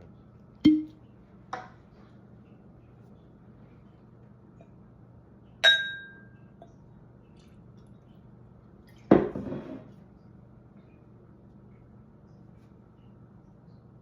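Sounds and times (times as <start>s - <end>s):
glass clinking: 5.6s - 6.4s.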